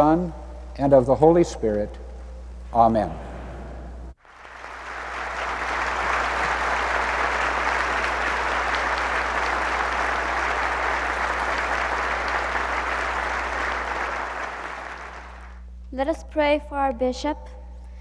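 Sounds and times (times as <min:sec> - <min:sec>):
congregation applauding: 0:04.2 - 0:15.6.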